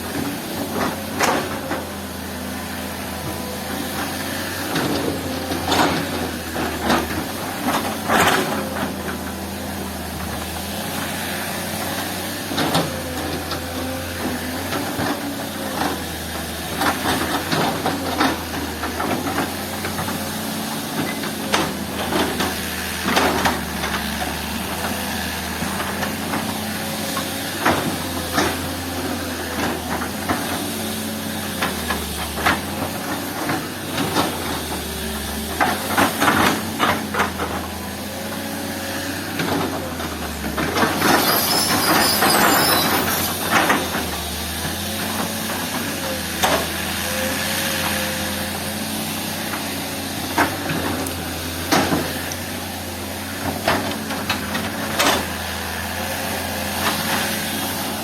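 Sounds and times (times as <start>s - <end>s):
diesel engine running: 0.0s - 58.0s.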